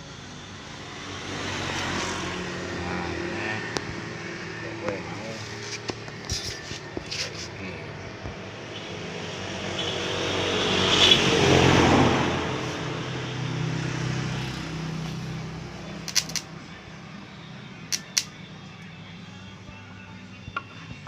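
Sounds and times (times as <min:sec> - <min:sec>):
vehicle passing by: 0:00.5 - 0:17.6
sharp clicks: 0:16.1 - 0:16.4, 0:17.9 - 0:18.3.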